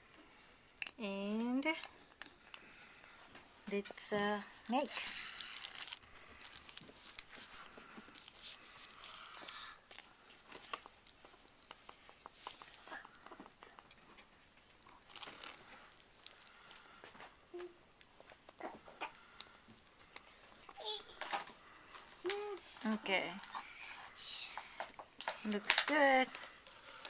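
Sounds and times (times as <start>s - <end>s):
soft rustling of plastic tray: 2.6s - 9.6s.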